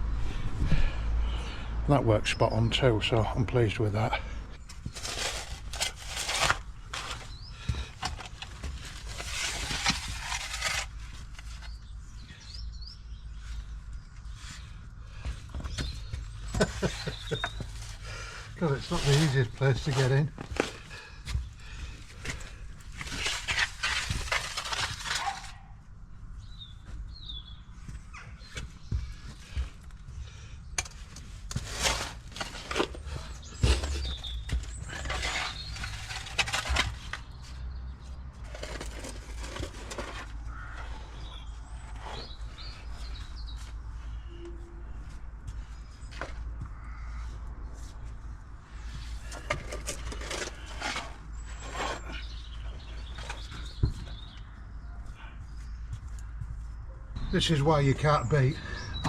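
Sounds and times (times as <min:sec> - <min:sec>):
shovel scraping soil and rubble: 0:04.8 - 0:11.8, 0:16.5 - 0:21.0, 0:22.1 - 0:25.6, 0:30.8 - 0:37.4, 0:38.4 - 0:40.4, 0:48.9 - 0:53.7.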